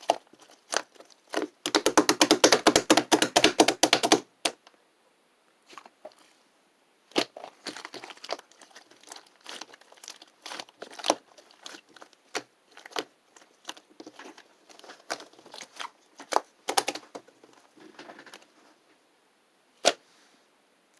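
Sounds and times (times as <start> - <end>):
slime crackling and popping: 7.1 - 17.2.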